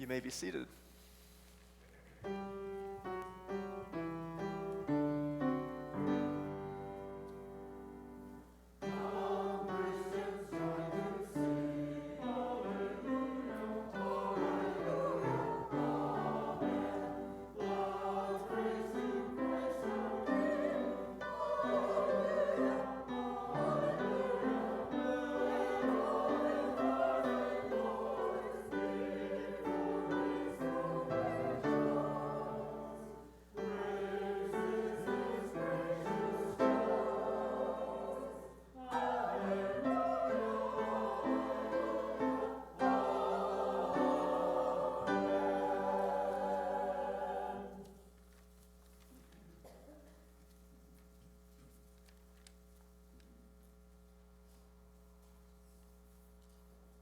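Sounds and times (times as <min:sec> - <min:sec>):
choir singing: 0:03.8 - 0:48.0.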